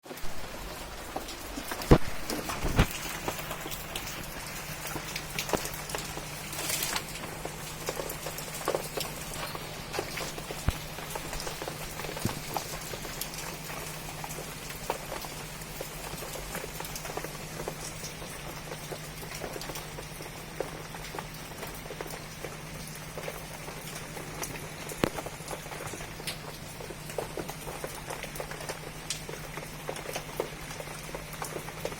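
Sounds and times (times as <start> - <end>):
rain patter: 0.0 - 31.9
raindrops ticking: 0.0 - 31.9.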